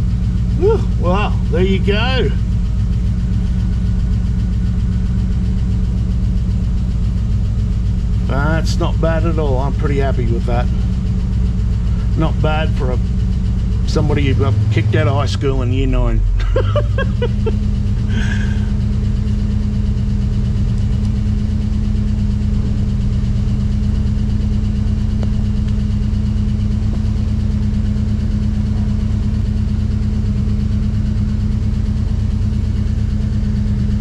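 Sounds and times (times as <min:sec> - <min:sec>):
car engine idling: 0:00.0 - 0:34.0.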